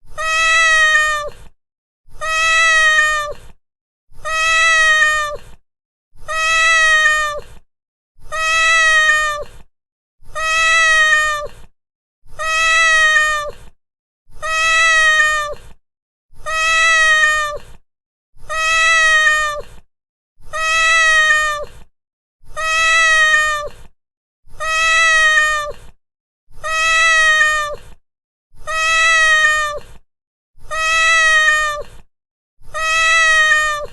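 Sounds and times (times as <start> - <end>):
cat meowing: 0.1 - 1.5, 2.1 - 3.5, 4.2 - 5.5, 6.2 - 7.5, 8.2 - 9.6, 10.3 - 11.6, 12.3 - 13.7, 14.3 - 15.8, 16.4 - 17.8, 18.4 - 19.8, 20.4 - 21.8, 22.5 - 23.8, 24.5 - 25.9, 26.6 - 27.9, 28.6 - 30.0, 30.6 - 32.0, 32.6 - 33.9.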